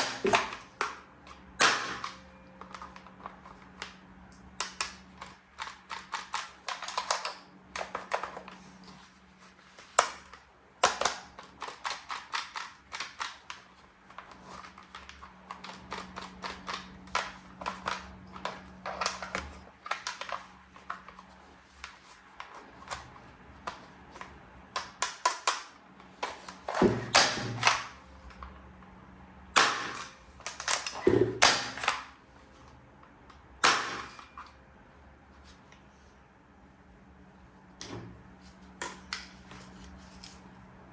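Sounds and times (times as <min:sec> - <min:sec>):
plastic toy parts clicking: 0:00.0 - 0:08.5, 0:09.9 - 0:21.2.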